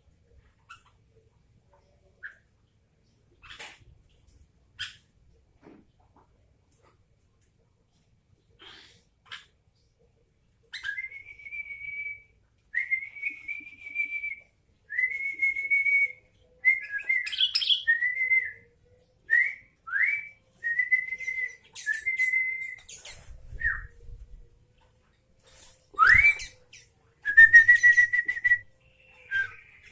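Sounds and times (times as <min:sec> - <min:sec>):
sliding whistles: 0:19.3 - 0:24.0, 0:25.6 - 0:28.7
whistled notes: 0:25.9 - 0:26.6, 0:27.2 - 0:29.9.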